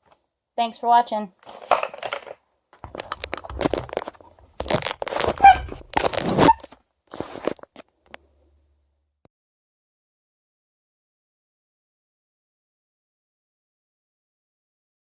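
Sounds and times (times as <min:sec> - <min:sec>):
crunching crackling handling noises: 0:01.4 - 0:08.2.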